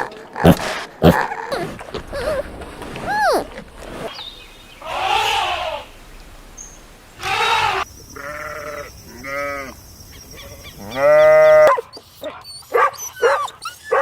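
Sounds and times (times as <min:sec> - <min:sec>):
sheep bleating: 0:04.8 - 0:05.8, 0:07.2 - 0:09.8.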